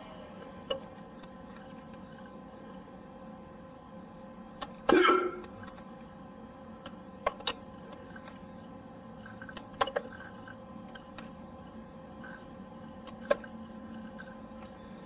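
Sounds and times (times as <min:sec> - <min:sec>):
man hiccuping: 0:04.9 - 0:05.5.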